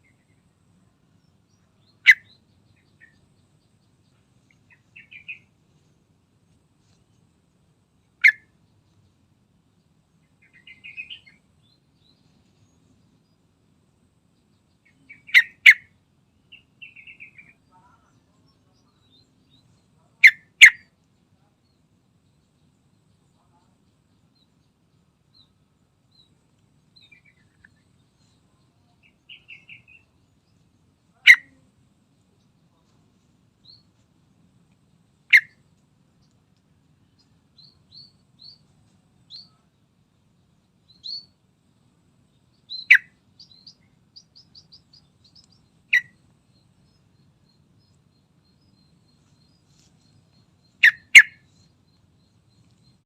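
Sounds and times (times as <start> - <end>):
bird calling sharp notes: 15.1 - 15.9, 35.3 - 35.6, 50.8 - 51.5
soft high chirps: 42.5 - 53.0.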